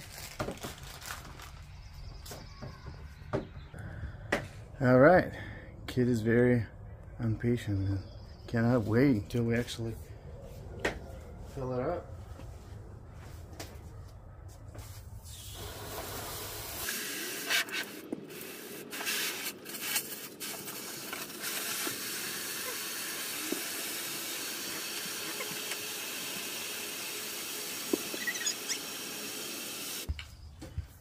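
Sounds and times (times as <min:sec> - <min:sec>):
water spraying into plastic basin: 0:15.4 - 0:30.1.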